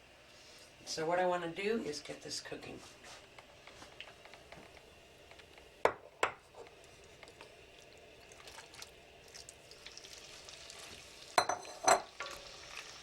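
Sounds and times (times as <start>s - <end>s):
chicken sizzling in oil: 3.4s - 13.0s.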